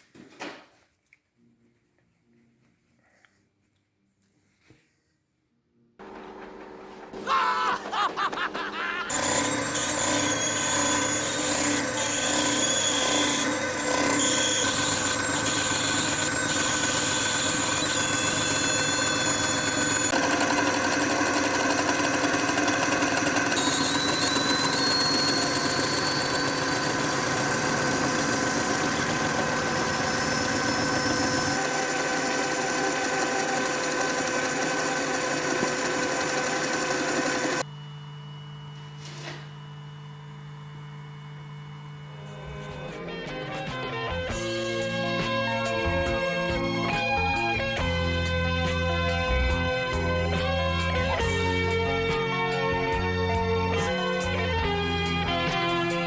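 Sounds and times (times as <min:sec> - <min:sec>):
electric motor whining: 0:09.1 - 0:37.7.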